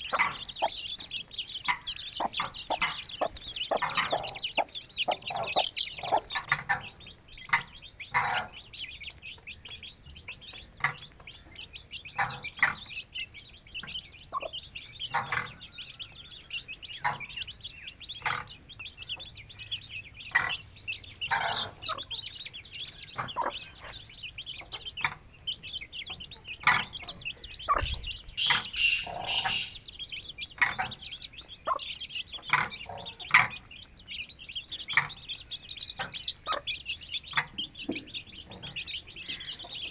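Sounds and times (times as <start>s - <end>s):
chicks peeping: 0.0s - 39.9s
hen clucking: 0.0s - 39.9s.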